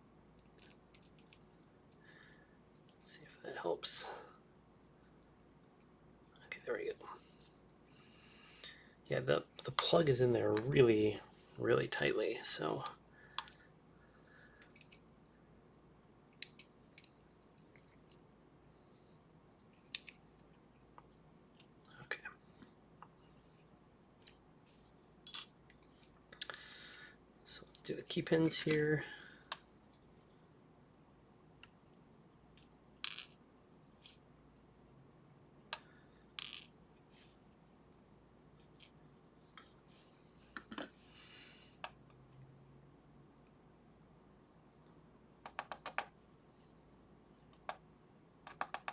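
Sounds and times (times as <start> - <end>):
lock pins clicking and clinking: 27.9 - 29.0.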